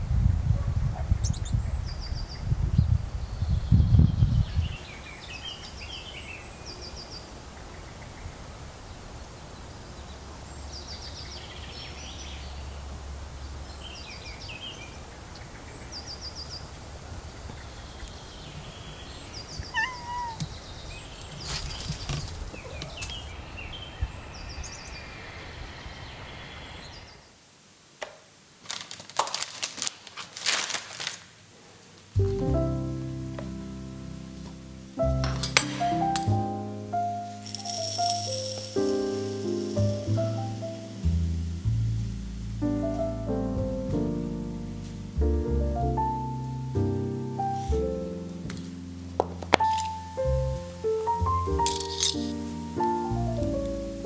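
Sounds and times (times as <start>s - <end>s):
small birds chirping: 0.7s - 27.4s
low rumble: 39.9s - 46.0s.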